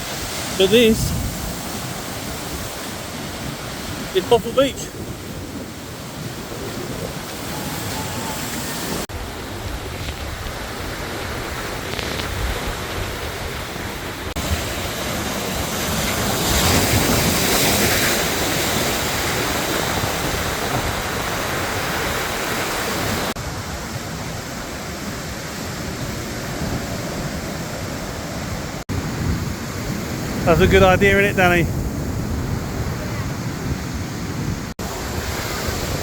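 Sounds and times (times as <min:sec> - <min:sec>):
wind buffeting microphone: 0:00.0 - 0:14.7, 0:25.8 - 0:36.0
sea surf breaking on beach: 0:00.0 - 0:36.0.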